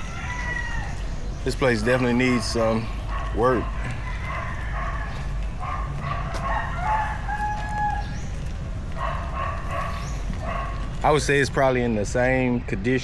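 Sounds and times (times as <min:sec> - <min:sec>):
rooster crowing: 0:00.0 - 0:01.3, 0:03.7 - 0:05.4, 0:06.2 - 0:08.3
outdoor background noise: 0:00.0 - 0:13.0.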